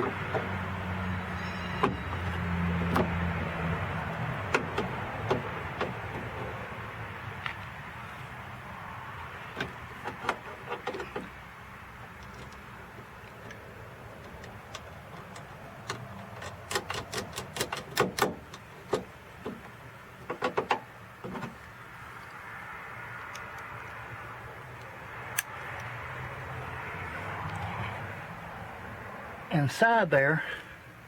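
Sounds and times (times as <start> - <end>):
tools and parts clicking: 12.1 - 19.6.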